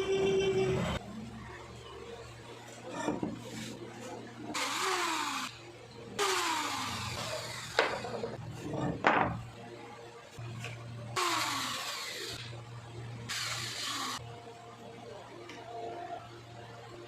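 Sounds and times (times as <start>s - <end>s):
electric cutter whine: 4.5s - 8.9s, 11.1s - 14.2s.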